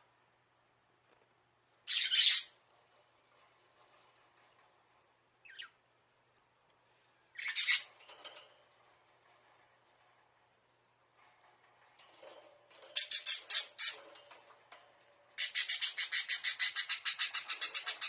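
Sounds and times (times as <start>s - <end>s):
budgerigar harsh calls: 15.4s - 18.0s.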